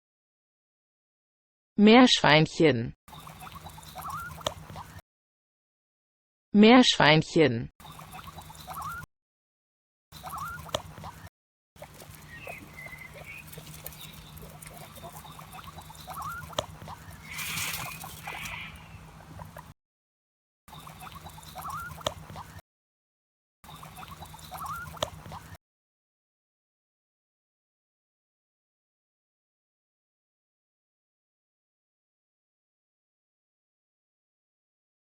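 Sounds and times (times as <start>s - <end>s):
guinea pig squeaking: 3.1s - 5.0s, 7.8s - 9.1s, 10.2s - 19.7s, 20.7s - 22.6s, 23.7s - 25.6s.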